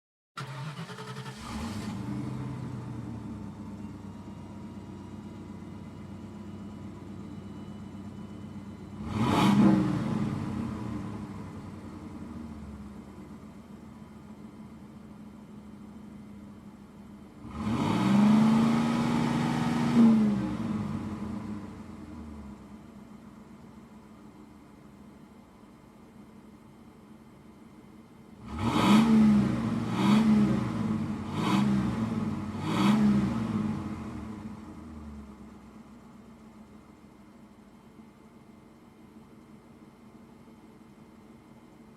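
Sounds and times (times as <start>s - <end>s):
car engine revving: 0.4s - 3.8s, 8.9s - 13.0s, 17.3s - 22.6s, 28.4s - 35.6s
car engine idling and revving: 0.4s - 41.9s.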